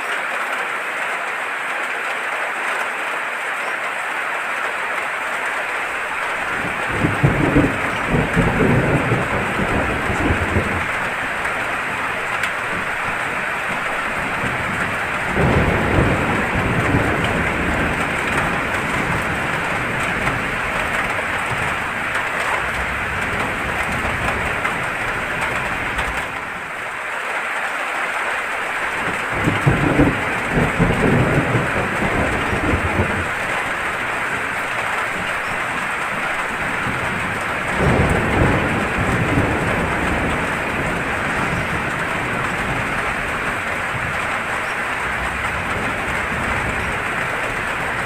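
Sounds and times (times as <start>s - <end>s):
heavy rain hissing: 0.0s - 48.0s
thunder rumbling: 5.6s - 27.0s, 28.4s - 48.0s.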